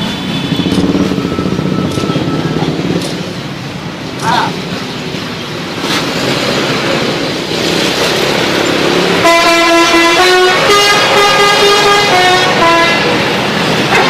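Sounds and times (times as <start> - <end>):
passing vehicles: 0.0 - 14.0
multi-tone musical air horn: 9.2 - 13.2.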